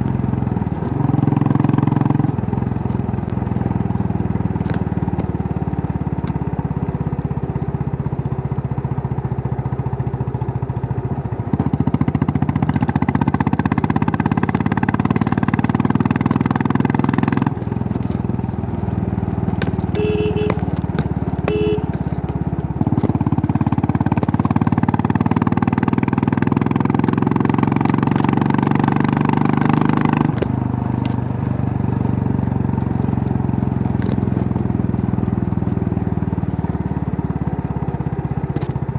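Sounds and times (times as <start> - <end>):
motorcycle engine revving: 0.0 - 38.9
horn beeps: 19.9 - 20.7, 21.4 - 22.0.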